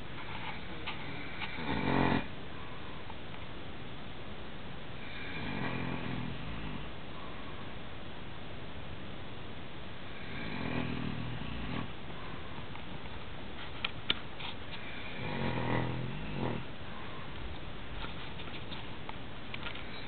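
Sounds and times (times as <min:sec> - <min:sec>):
man snoring: 0:01.0 - 0:02.3, 0:05.0 - 0:06.8, 0:10.1 - 0:11.9, 0:14.9 - 0:16.7.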